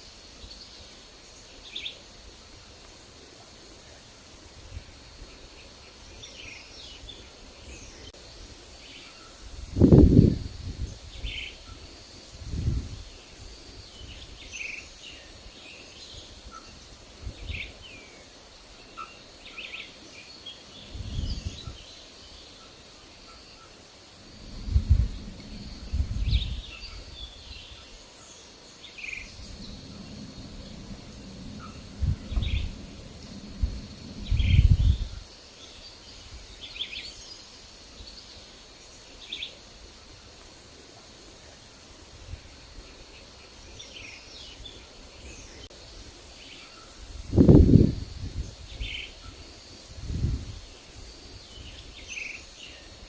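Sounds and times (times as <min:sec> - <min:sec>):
forest birds chirping: 0:00.0 - 0:53.0
wind buffeting microphone: 0:09.5 - 0:11.4, 0:12.3 - 0:14.4, 0:20.8 - 0:21.8, 0:24.2 - 0:27.8, 0:29.2 - 0:35.3, 0:47.1 - 0:51.9.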